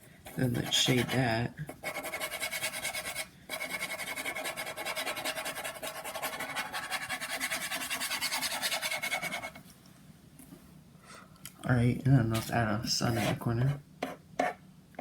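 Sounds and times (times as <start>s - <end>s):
pen scratching on paper: 0.5s - 9.6s, 13.1s - 13.4s.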